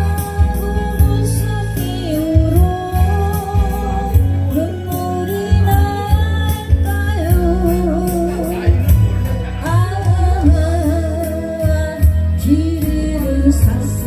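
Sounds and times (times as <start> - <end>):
ballad song with melody: 0.0 - 14.0
steady bass beat: 0.0 - 14.0.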